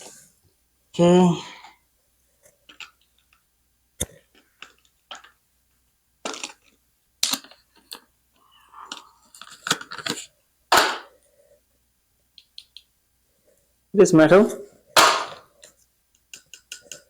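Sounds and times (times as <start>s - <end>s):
plastic packaging clicks and crinkles: 2.4s - 3.4s, 4.0s - 5.4s, 6.2s - 8.1s, 8.9s - 10.3s.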